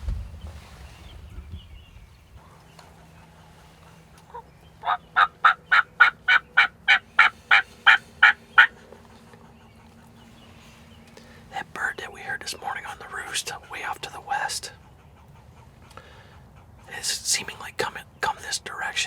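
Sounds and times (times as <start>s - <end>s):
turkey yelps: 4.3s - 8.7s.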